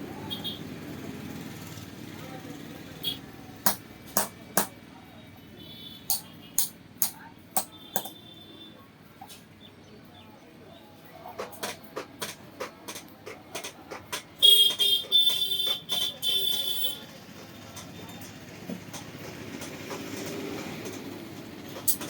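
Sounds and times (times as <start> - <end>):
hammer striking iron on anvil: 3.7 - 4.8, 6.1 - 8.1.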